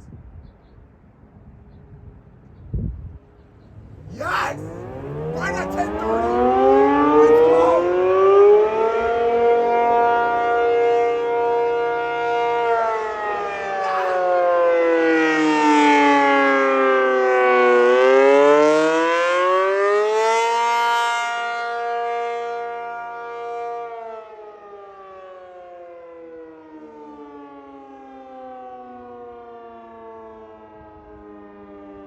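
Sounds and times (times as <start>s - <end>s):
warning siren wavering tone: 4.0s - 19.2s.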